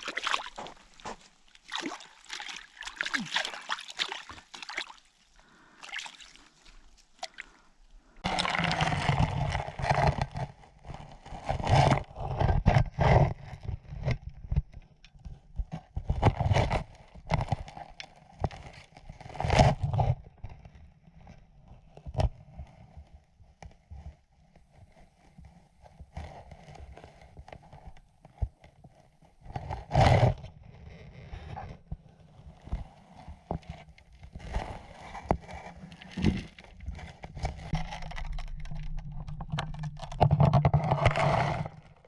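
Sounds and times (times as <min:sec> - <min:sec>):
water sloshing and gurgling: 0:00.0 - 0:11.0, 0:33.6 - 0:42.0.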